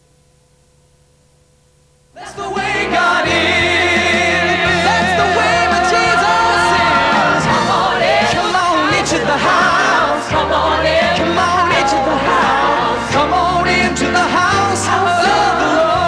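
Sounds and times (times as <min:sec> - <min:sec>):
gospel choir singing with band: 0:02.2 - 0:16.0.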